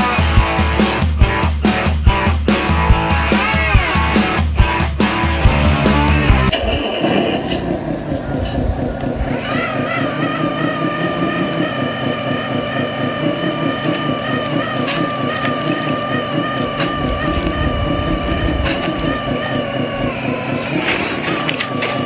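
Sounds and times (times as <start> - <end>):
electric motor and gear whine: 9.1 - 22.0
engine-like chugging: 9.2 - 22.0.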